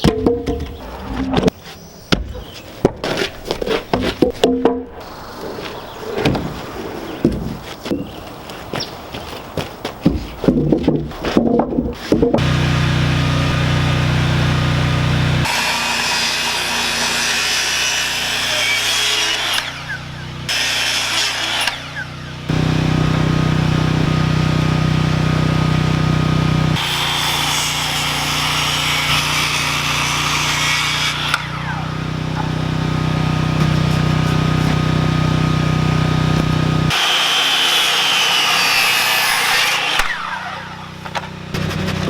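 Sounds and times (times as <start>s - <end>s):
power saw cutting wood: 12.0s - 42.0s
engine humming steadily: 12.4s - 17.4s, 18.1s - 37.0s, 40.0s - 42.0s.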